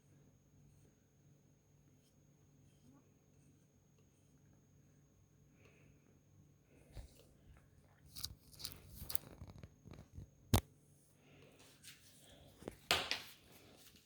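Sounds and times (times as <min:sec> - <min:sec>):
scratching on wooden pieces: 0:08.0 - 0:10.4.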